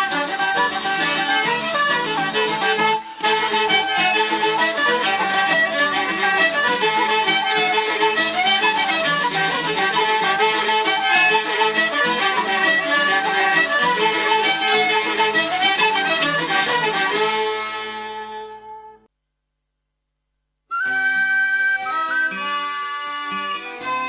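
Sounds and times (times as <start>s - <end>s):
percussion: 0.0s - 17.8s
rhythmic strumming: 0.0s - 18.8s, 20.8s - 24.0s
fiddle melody: 0.0s - 19.1s, 20.7s - 24.0s.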